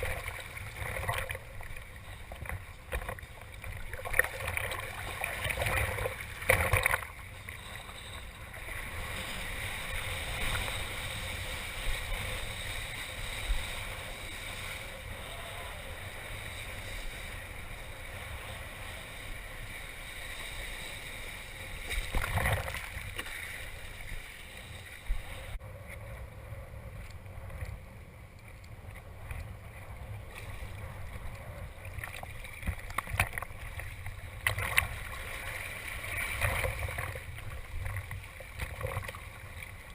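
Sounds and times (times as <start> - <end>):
rushing splashing water: 0.0 - 19.5, 21.6 - 25.6, 31.8 - 39.9
wind rumbling on microphone: 0.0 - 39.9.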